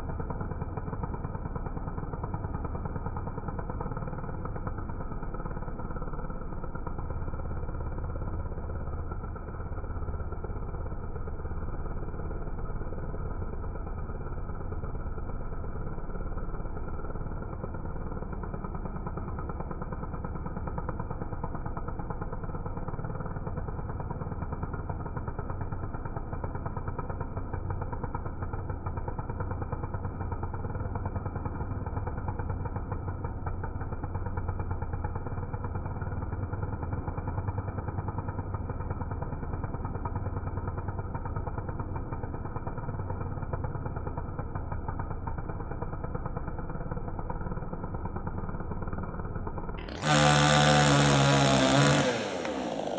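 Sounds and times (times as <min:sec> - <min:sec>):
chainsaw cutting wood: 0:00.0 - 0:52.9.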